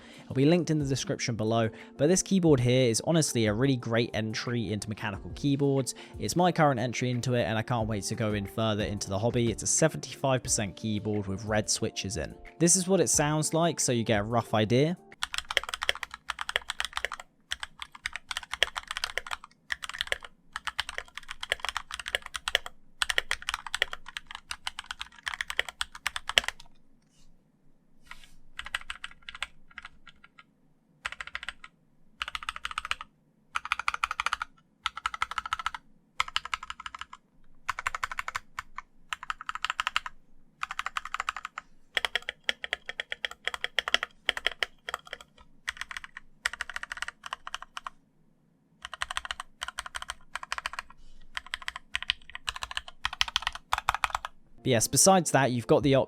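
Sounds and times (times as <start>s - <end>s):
mechanical keyboard typing: 15.1s - 26.7s, 28.6s - 48.0s, 48.8s - 54.4s.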